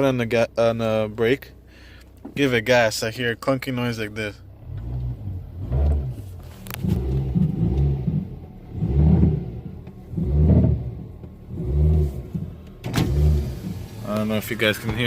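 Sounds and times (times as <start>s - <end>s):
car engine revving: 4.5s - 15.0s
engine mount clunking: 9.7s - 15.0s.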